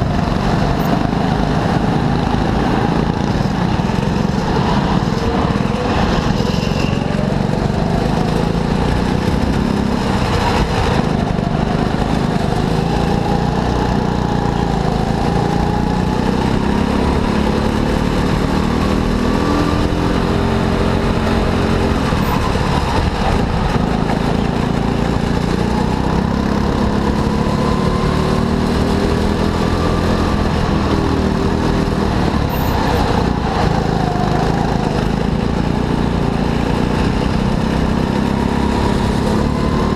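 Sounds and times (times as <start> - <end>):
go-kart engine revving: 0.0 - 39.9.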